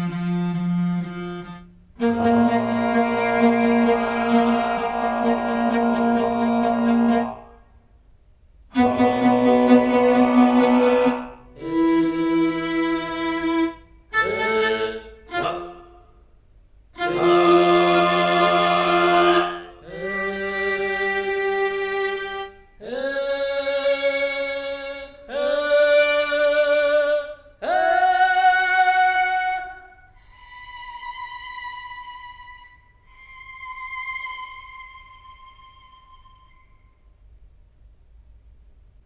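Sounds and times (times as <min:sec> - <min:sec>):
sustained instrument notes: 0:00.0 - 0:07.7, 0:08.8 - 0:15.7, 0:17.0 - 0:22.4.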